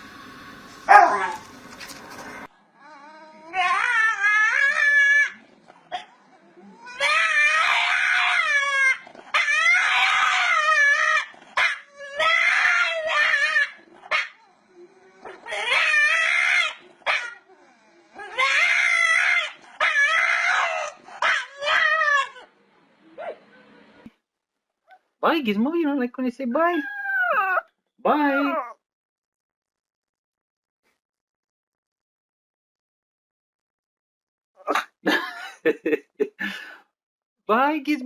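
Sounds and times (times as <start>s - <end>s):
dog howling: 2.8s - 22.5s, 26.8s - 27.7s.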